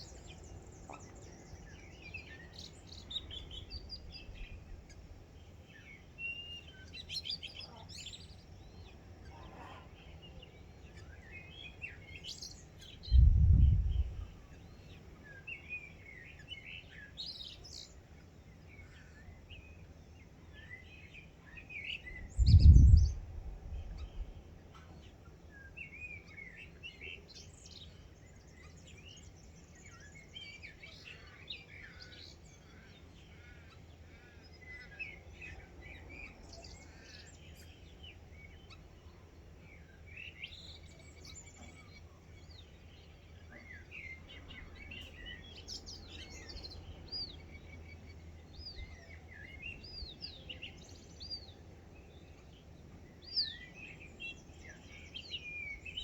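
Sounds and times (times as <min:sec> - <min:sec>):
low rumbles: 0:13.1 - 0:14.4
birds chirping and calling: 0:29.9 - 0:56.0.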